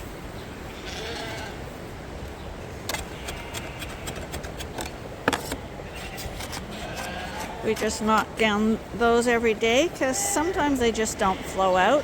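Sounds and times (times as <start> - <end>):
knocks and scraping of drinker: 2.9 - 5.6.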